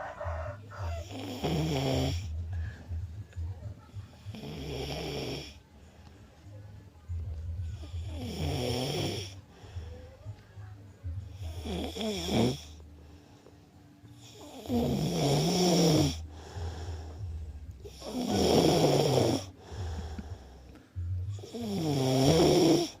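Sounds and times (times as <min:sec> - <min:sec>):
person snoring: 0:00.0 - 0:02.4, 0:04.3 - 0:05.6, 0:07.8 - 0:09.8, 0:11.3 - 0:12.8, 0:14.1 - 0:20.7, 0:21.3 - 0:23.0.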